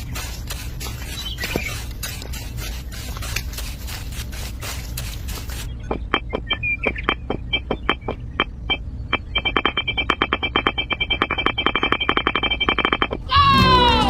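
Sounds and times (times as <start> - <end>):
steady low hum: 0.0 - 13.4
sharp ringing clicks: 5.8 - 13.2.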